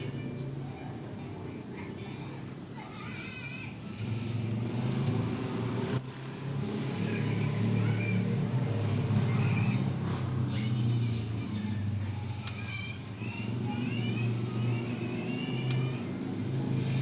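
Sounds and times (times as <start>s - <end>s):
low engine hum: 0.0s - 17.0s
parrot shrill call: 6.0s - 6.4s.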